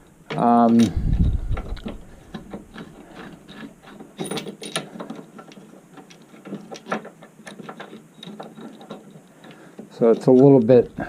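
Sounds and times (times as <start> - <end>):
small metal hardware clicking: 0.3 - 11.0.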